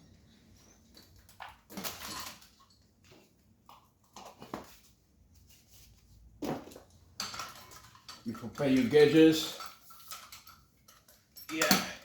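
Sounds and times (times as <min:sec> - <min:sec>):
tools and metal fittings clattering: 0:00.5 - 0:02.8, 0:06.6 - 0:12.0.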